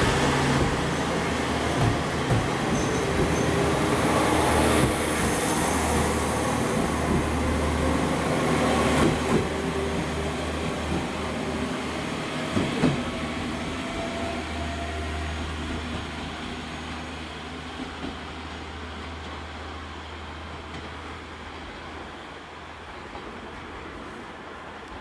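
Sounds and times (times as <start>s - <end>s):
electric train humming: 0.0s - 25.0s.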